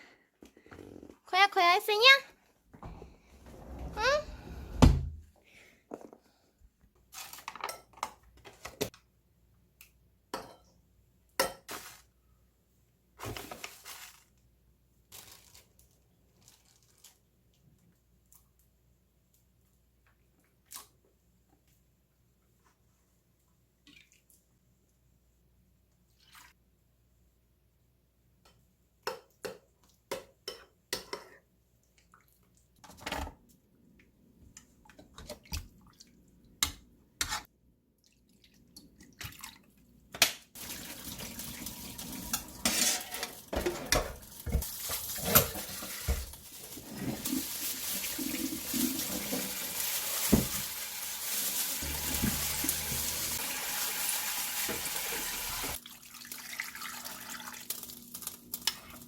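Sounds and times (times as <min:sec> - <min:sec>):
dishes clinking in a sink: 0:10.3 - 0:10.8, 0:41.1 - 0:46.3
tap water running: 0:40.6 - 0:58.4.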